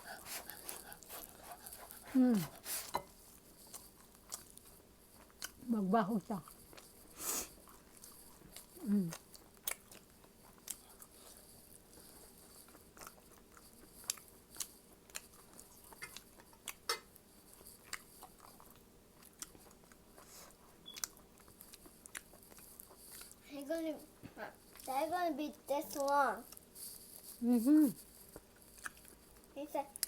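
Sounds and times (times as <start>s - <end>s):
person chewing and biting food: 3.5s - 5.6s, 6.4s - 23.4s, 28.1s - 29.5s.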